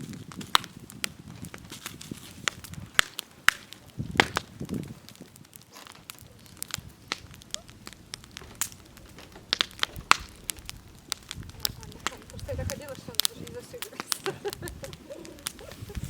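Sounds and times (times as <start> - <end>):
wood fire crackling: 0.0 - 16.0
dull low thumps: 6.7 - 13.2.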